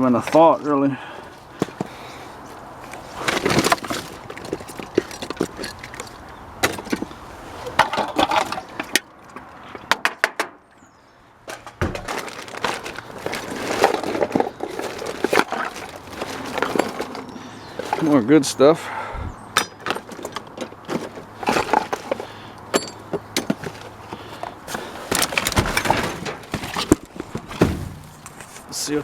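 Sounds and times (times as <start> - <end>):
debris clattering in dumpster: 11.5 - 18.2, 19.6 - 23.9, 24.7 - 28.6
dull thud: 11.8 - 12.2, 27.4 - 28.2.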